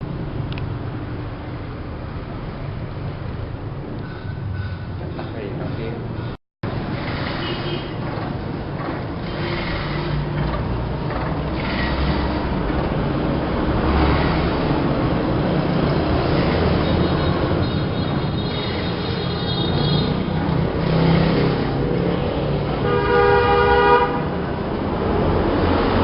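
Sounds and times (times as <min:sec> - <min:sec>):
plastic cutting machine running: 0:06.7 - 0:15.0.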